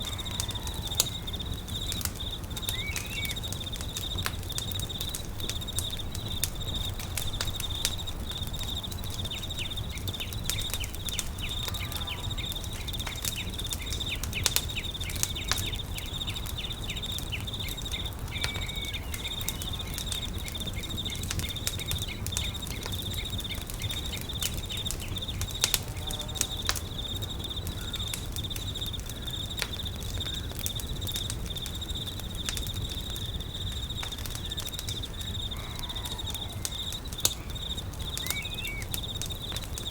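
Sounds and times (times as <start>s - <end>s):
high-pitched insect trill: 0.0s - 29.5s
campfire crackling and popping: 0.0s - 39.9s.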